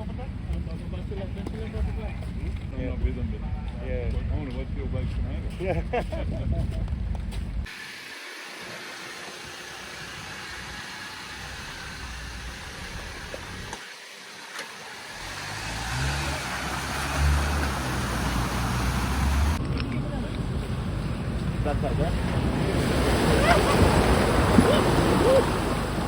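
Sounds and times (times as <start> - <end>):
vehicle engine at low revs: 0.0 - 7.8, 9.6 - 26.0
outdoor noise hiss: 7.7 - 19.6.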